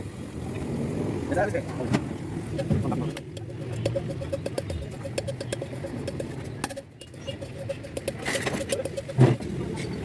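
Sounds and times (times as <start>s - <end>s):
rapid regular chirps: 3.0s - 9.2s.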